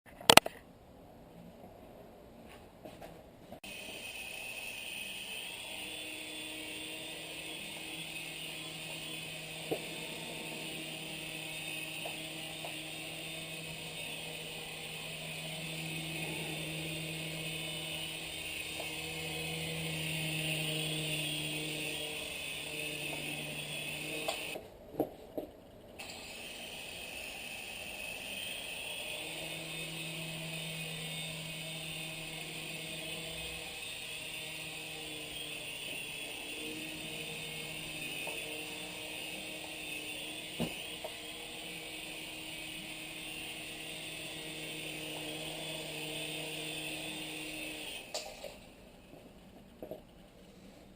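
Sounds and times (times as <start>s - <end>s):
model helicopter whine: 3.6s - 24.6s, 26.0s - 50.9s.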